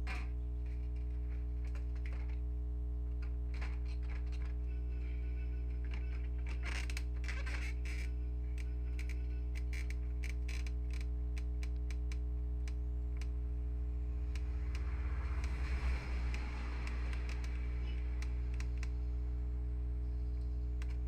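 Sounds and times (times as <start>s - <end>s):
electrical hum: 0.0s - 21.0s
small clicks and taps: 8.6s - 13.4s.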